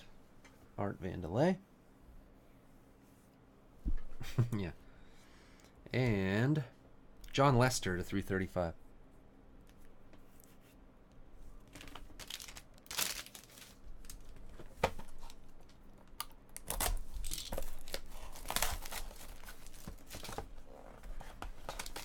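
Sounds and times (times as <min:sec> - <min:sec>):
packaging tearing and crumpling: 0:11.7 - 0:14.3, 0:16.6 - 0:20.4, 0:21.6 - 0:22.0.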